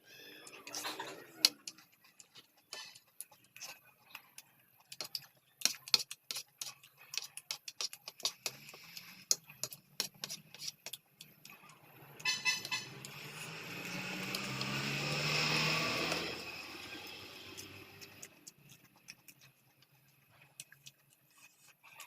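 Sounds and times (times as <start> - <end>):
mouth chewing food: 0.1 - 22.0.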